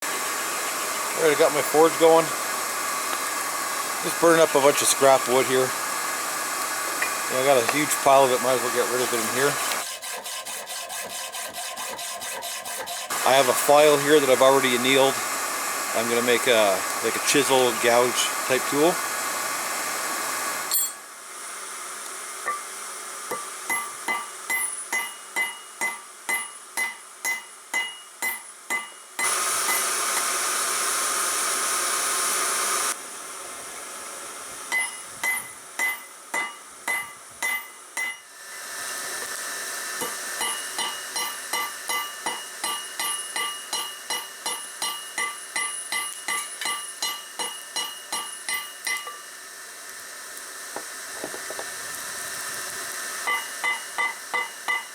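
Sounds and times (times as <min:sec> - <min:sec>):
forge blower rushing air: 0:00.0 - 0:26.0, 0:28.7 - 0:54.9
hammer clanging on anvil: 0:23.3 - 0:29.9, 0:34.7 - 0:38.3, 0:40.0 - 0:49.2, 0:53.3 - 0:54.9.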